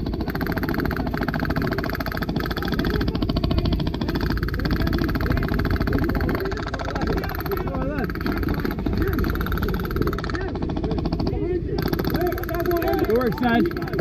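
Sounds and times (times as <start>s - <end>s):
airsoft guns firing full auto: 0.0s - 14.0s.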